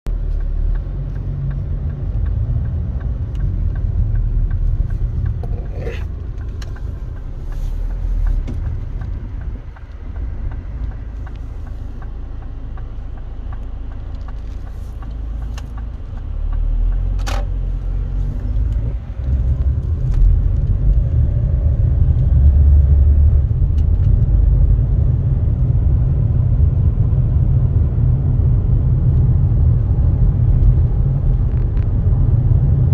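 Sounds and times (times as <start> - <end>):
low uneven rumble: 0.1 - 32.9.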